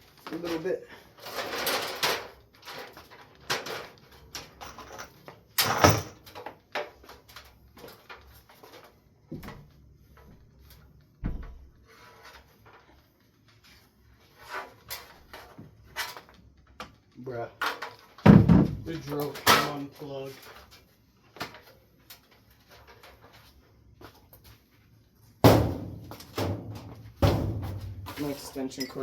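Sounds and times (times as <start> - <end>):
ladder knocking and scraping: 11.2 - 24.3, 25.4 - 29.0.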